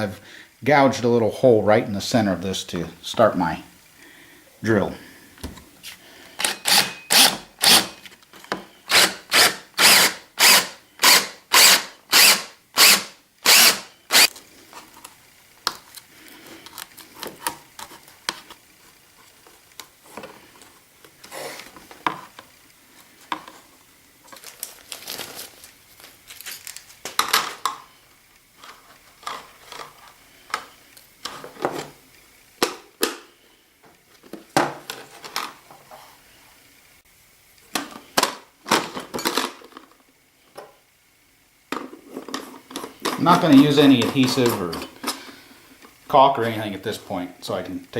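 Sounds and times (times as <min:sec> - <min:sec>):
power drill cutting plastic: 0:06.4 - 0:08.0, 0:08.9 - 0:14.3.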